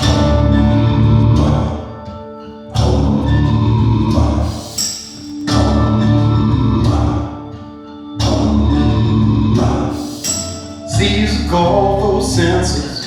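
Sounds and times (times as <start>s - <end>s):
deep bass hits: 0.0s - 1.9s, 2.8s - 4.6s, 5.5s - 7.4s, 8.2s - 10.0s
sustained pitched tones: 0.0s - 13.0s.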